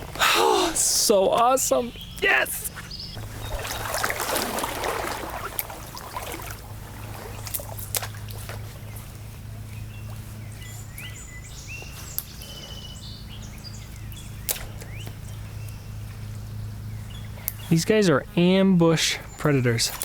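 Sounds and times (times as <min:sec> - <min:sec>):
splashing water: 0:00.0 - 0:08.9, 0:19.5 - 0:20.0
small birds chirping: 0:00.0 - 0:20.0
steady low hum: 0:00.0 - 0:20.0.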